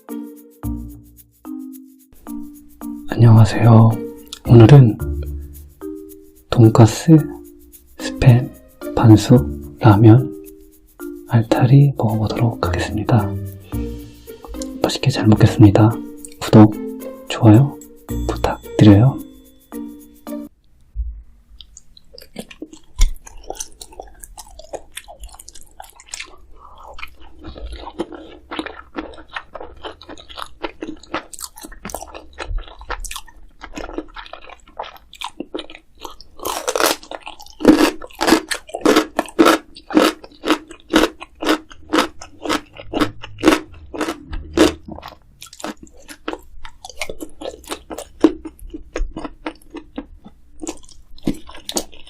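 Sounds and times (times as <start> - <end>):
crisp food crunching: 21.6 - 52.0.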